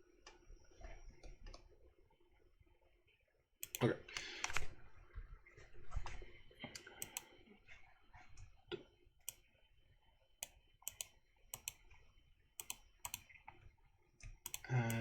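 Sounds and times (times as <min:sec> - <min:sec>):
keyboard keys clicking: 0:03.6 - 0:04.6, 0:07.0 - 0:07.3, 0:10.4 - 0:11.8, 0:12.6 - 0:13.3, 0:14.5 - 0:15.0
mouse button clicks: 0:03.6 - 0:04.7, 0:07.0 - 0:07.3, 0:10.4 - 0:11.8, 0:12.6 - 0:13.3, 0:14.5 - 0:15.0.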